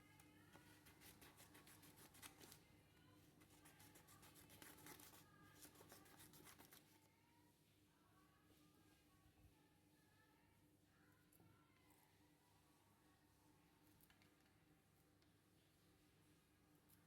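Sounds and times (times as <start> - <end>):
faint rapid clicking and scraping: 0.2 - 7.1, 13.6 - 17.0.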